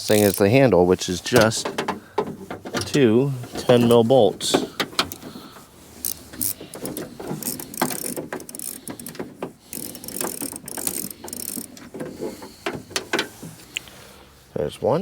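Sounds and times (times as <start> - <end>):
ratchet wrench clicking: 0.0 - 0.6, 6.0 - 12.3.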